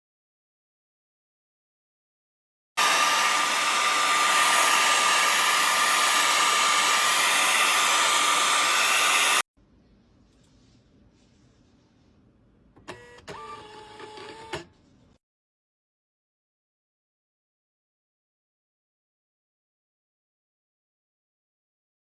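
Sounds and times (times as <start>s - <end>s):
electric blower motor: 2.8s - 9.4s.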